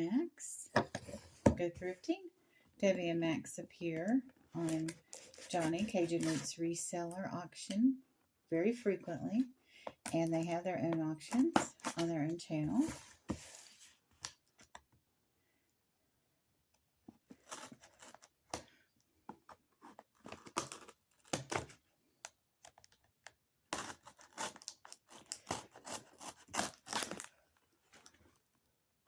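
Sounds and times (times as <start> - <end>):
packing tape tearing: 23.7 - 27.3.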